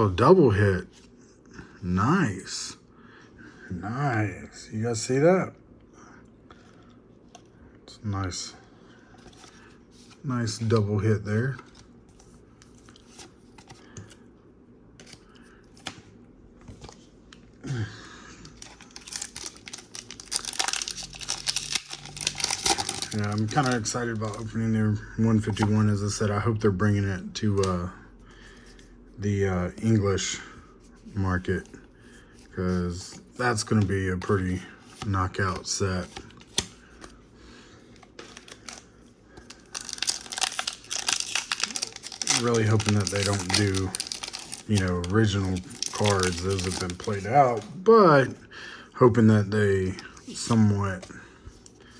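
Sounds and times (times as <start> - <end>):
foil wrapper tearing and crinkling: 18.6 - 24.4, 39.5 - 47.2.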